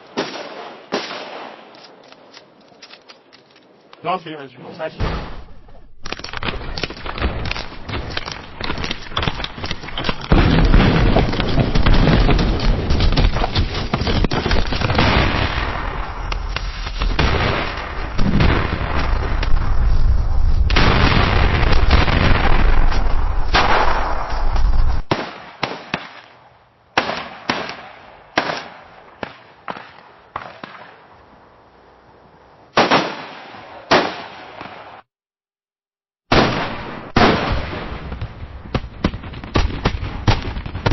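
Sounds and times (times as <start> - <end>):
echoing single gunshots: 0.1 - 1.7, 25.1 - 26.3, 27.0 - 31.0, 32.8 - 35.0.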